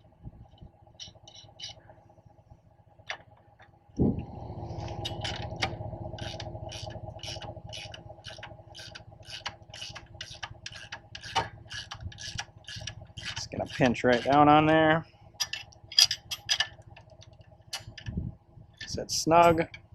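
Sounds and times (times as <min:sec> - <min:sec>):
low rumble: 0:03.9 - 0:09.3, 0:17.8 - 0:19.8
ratchet wrench clicking: 0:06.2 - 0:14.5.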